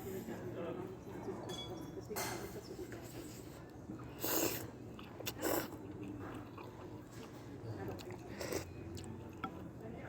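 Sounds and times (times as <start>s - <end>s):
faint chewing: 3.3s - 9.7s.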